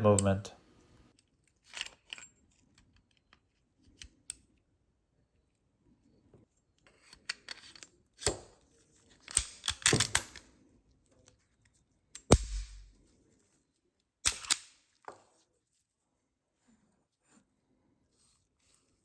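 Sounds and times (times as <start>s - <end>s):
pistol metallic clicks and clacks: 9.3s - 10.4s, 12.2s - 13.0s, 14.2s - 14.8s
loud snap with low thud: 12.3s - 13.0s.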